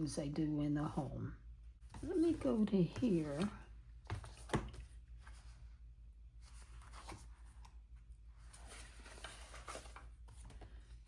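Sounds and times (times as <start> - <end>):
low steady hum: 0.0 - 11.0
paper sheets rustling: 6.4 - 11.0.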